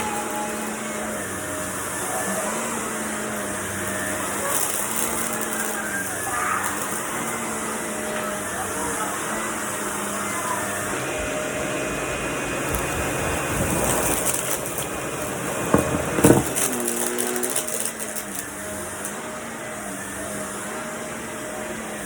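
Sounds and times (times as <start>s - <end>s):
vacuum cleaner running: 0.0s - 22.0s
rattling and clicking: 12.7s - 18.5s
loud knocks: 15.4s - 16.7s.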